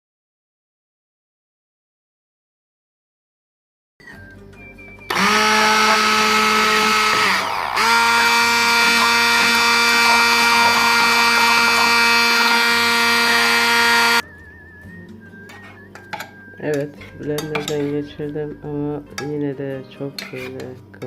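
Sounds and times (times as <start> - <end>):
blender motor whining: 5.1 - 14.2.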